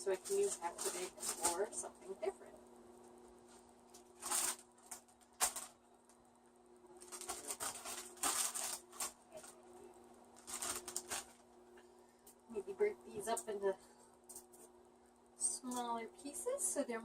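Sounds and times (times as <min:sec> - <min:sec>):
plastic bag rustling and crinkling: 0:00.0 - 0:01.9, 0:03.4 - 0:05.8, 0:07.0 - 0:09.6, 0:10.3 - 0:11.5.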